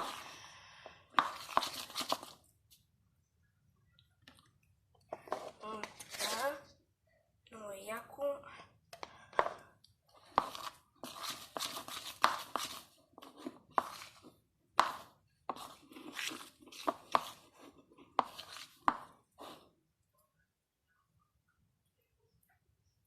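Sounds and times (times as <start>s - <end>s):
slime being stirred in a bowl: 0.0s - 2.9s, 9.0s - 19.9s.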